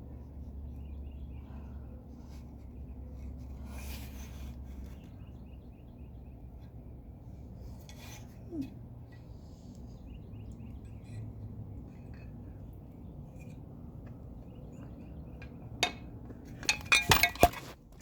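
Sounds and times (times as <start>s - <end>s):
metal parts rubbing and scraping: 16.6s - 17.8s.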